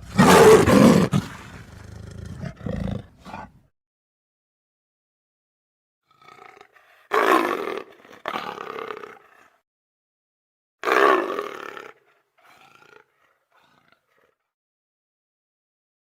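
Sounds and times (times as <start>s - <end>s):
big cat roaring: 0.0s - 3.6s, 6.1s - 9.6s, 10.8s - 14.4s
short growls: 0.0s - 3.7s.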